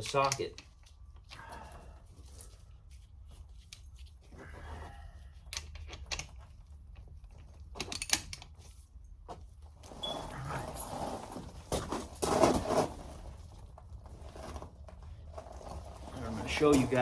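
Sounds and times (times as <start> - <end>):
metal tool clicking and rattling: 0.0 - 0.8.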